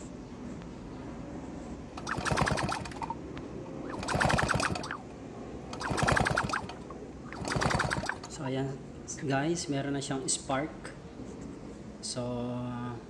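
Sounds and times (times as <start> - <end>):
engine rapid clicking: 2.0 - 3.2, 3.9 - 5.0, 5.7 - 8.4.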